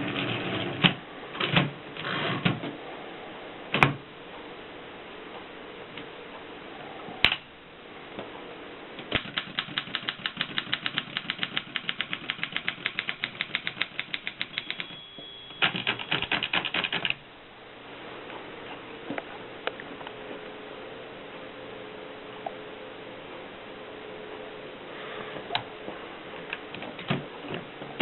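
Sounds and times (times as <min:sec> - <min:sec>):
typewriter keystrokes: 0:09.1 - 0:15.0, 0:15.6 - 0:17.2
typewriter bell ring: 0:14.3 - 0:16.8.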